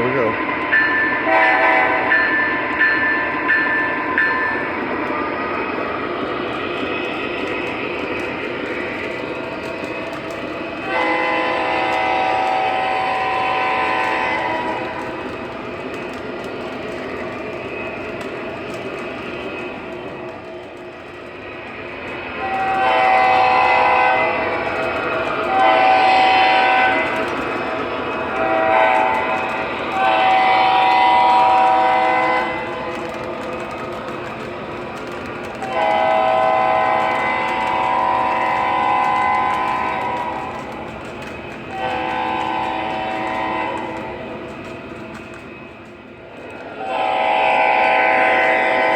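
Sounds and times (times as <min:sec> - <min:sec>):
locomotive air horn blasts: 0:01.2 - 0:02.1, 0:10.8 - 0:14.8, 0:22.5 - 0:24.4, 0:25.5 - 0:27.1, 0:28.4 - 0:29.4, 0:30.0 - 0:32.6, 0:35.7 - 0:40.5, 0:41.7 - 0:44.0, 0:46.8 - 0:48.9.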